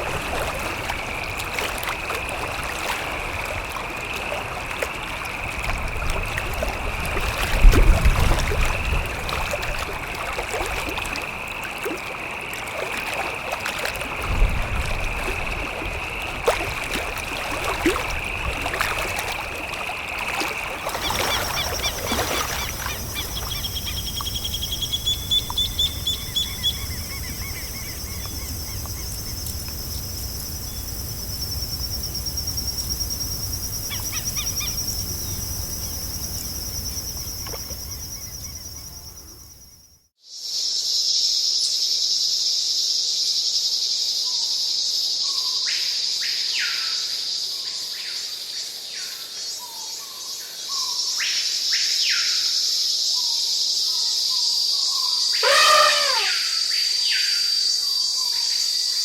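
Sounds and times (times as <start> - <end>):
loud insect chorus: 0.0 - 49.6, 51.6 - 59.0
high insect chirring: 20.8 - 39.8, 55.4 - 56.4
repeated bird calls: 55.4 - 56.5.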